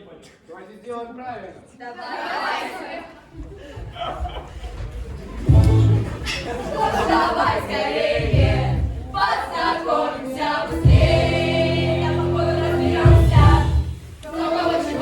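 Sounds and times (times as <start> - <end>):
choir singing: 1.8 - 3.2, 5.5 - 15.0.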